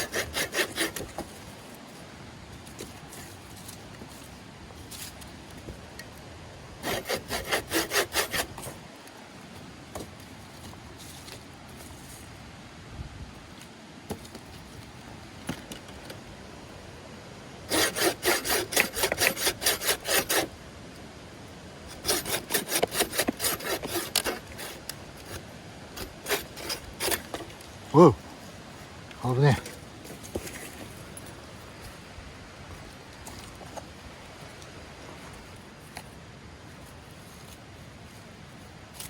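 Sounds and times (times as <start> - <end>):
hand saw cutting wood: 0.0 - 1.4, 6.8 - 8.8, 17.7 - 20.5, 21.9 - 28.1.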